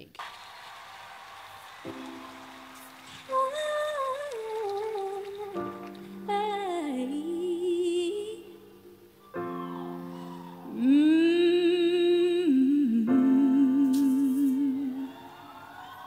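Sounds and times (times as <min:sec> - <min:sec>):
piano chords: 0:01.2 - 0:16.0
woman singing wordlessly: 0:03.3 - 0:09.0, 0:10.6 - 0:15.3.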